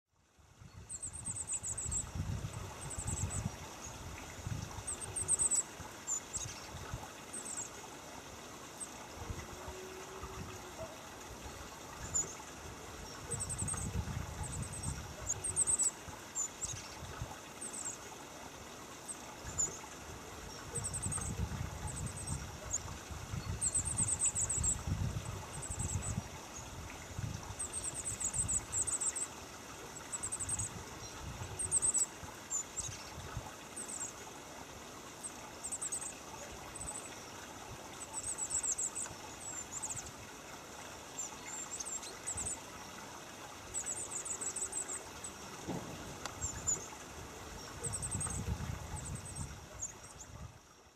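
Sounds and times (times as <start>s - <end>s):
bird high-pitched calls: 4.8s - 6.8s, 13.1s - 17.0s, 31.6s - 33.2s.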